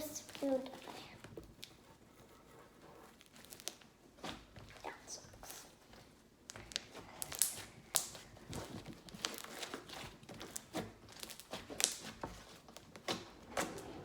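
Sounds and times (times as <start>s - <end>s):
slime squished by hand: 6.4s - 13.4s.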